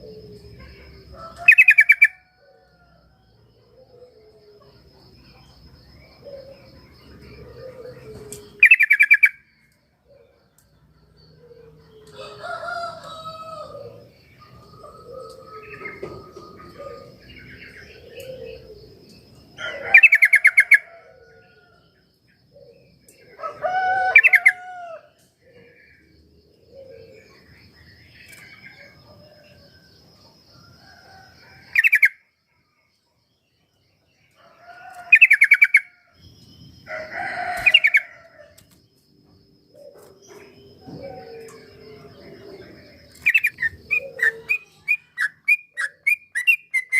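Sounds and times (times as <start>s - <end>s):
faint high bird trill: 39.8s - 46.9s.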